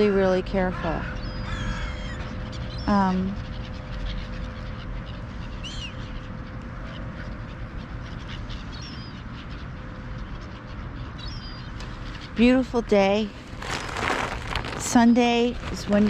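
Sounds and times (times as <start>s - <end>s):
faint steady hum: 0.0s - 16.0s
gulls calling: 0.0s - 16.0s
outdoor rush: 11.8s - 16.0s.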